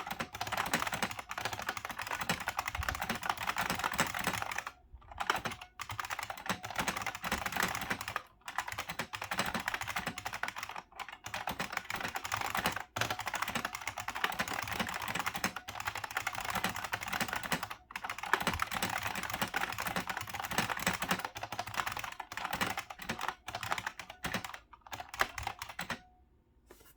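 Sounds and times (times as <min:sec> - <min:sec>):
clicky keyboard typing: 0:00.0 - 0:26.1.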